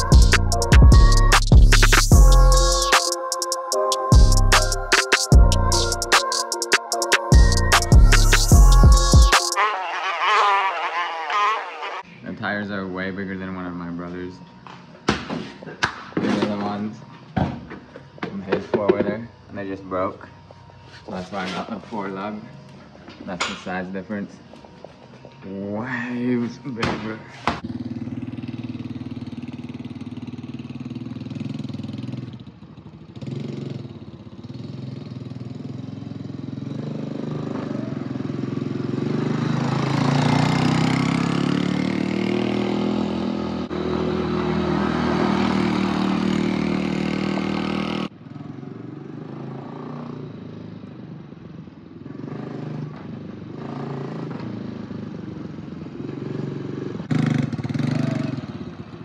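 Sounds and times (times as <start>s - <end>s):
small atv engine revving: 9.6s - 12.0s, 27.6s - 50.8s, 52.0s - 59.0s.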